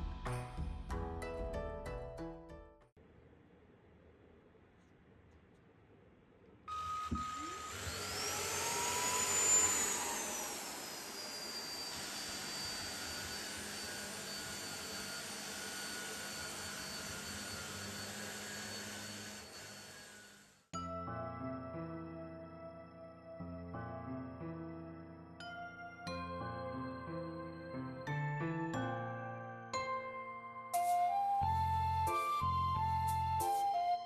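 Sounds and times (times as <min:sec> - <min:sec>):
vacuum cleaner motor whine: 0:06.7 - 0:20.7.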